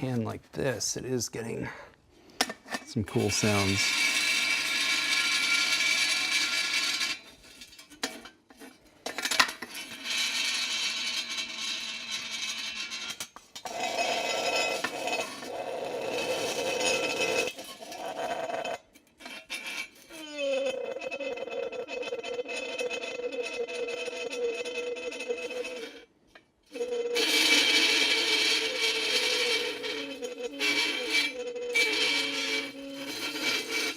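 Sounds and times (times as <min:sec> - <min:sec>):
metal sheet squealing: 0:03.2 - 0:07.2, 0:09.7 - 0:26.1, 0:26.7 - 0:33.9.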